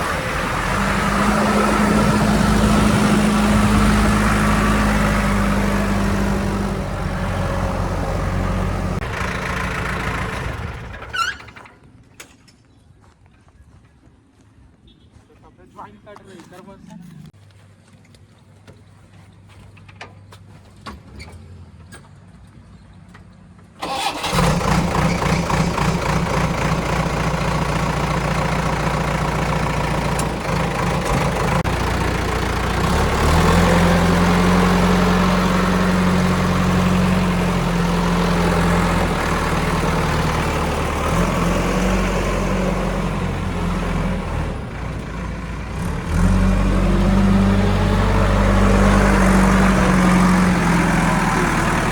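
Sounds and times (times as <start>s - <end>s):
diesel engine running: 0.0s - 11.7s, 23.8s - 51.9s.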